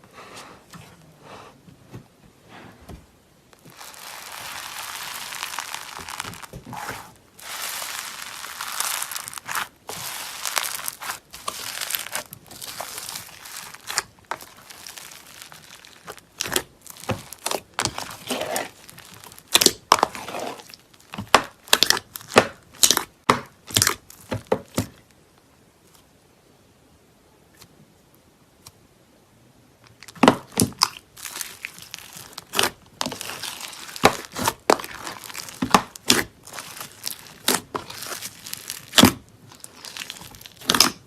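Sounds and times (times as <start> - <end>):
slime squishing by hand: 3.5 - 25.1, 29.8 - 41.0
slime popping: 3.6 - 25.0, 30.1 - 41.0.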